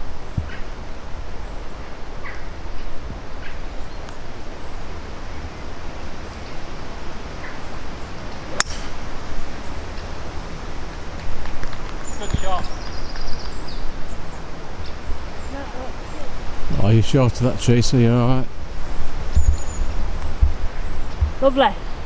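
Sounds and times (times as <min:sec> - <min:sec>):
golf club striking ball: 0:08.4 - 0:09.5.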